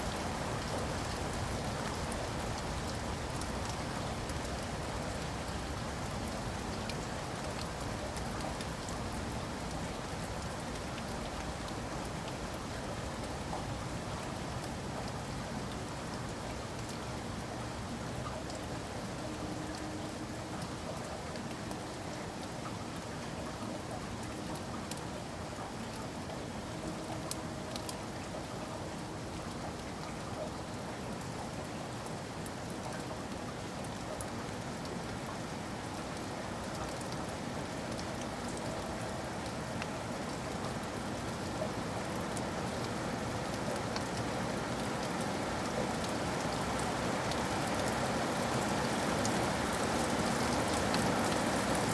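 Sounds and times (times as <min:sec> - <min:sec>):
rain on hard surfaces: 0:00.0 - 0:51.9
raindrop ticks: 0:00.0 - 0:51.9
sharp drips: 0:00.0 - 0:51.9
rain hissing: 0:44.5 - 0:51.9.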